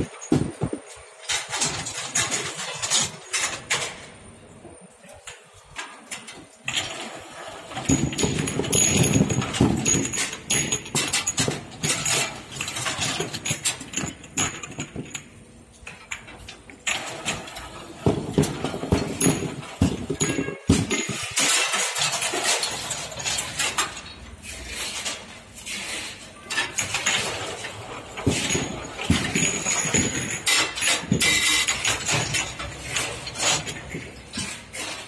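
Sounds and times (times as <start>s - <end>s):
bottle washing machine running: 6.7s - 15.3s, 16.8s - 35.0s
glass bottles clinking: 18.0s - 23.9s, 26.7s - 34.7s.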